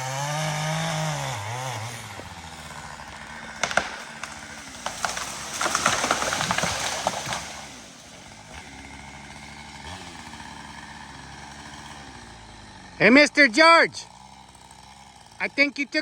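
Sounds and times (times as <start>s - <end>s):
small engine idling: 0.0s - 16.0s
tree crashing down: 0.1s - 13.4s
wood cracking and snapping: 0.4s - 13.0s.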